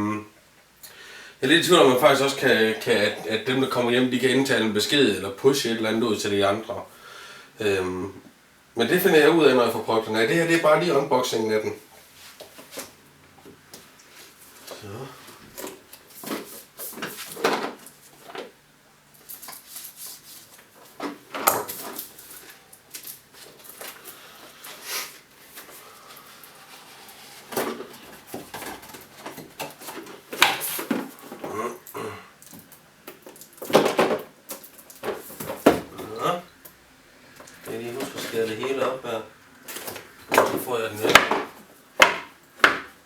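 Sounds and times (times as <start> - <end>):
packaging rustling and crinkling: 19.2 - 31.6.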